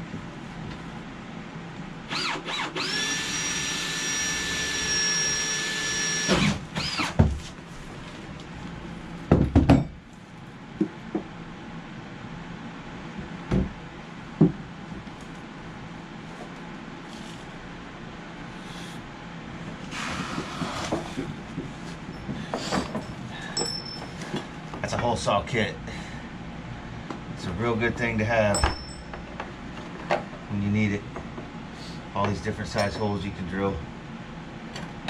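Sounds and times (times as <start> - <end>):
power drill revving: 2.1 - 7.2.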